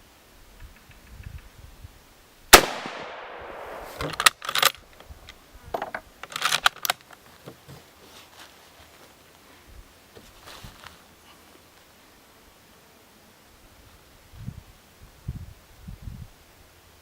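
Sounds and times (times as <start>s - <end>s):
rifle shot: 2.5s - 4.7s
rifle bolt metallic clacks: 3.6s - 5.1s, 5.8s - 7.2s.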